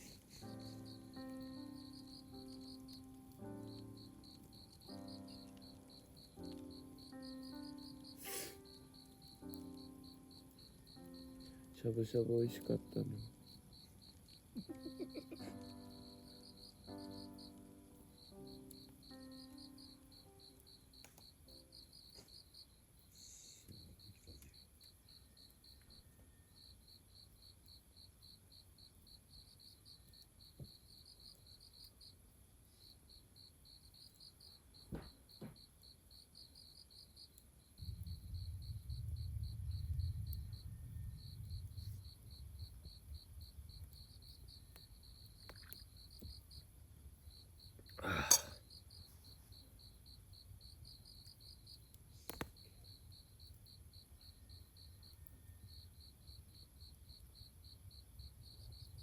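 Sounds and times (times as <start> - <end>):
campfire pops and crack: 0.0 - 22.4, 33.9 - 36.0, 37.2 - 46.8, 47.6 - 48.6, 51.1 - 53.7
insects chirping in trills: 0.0 - 59.0.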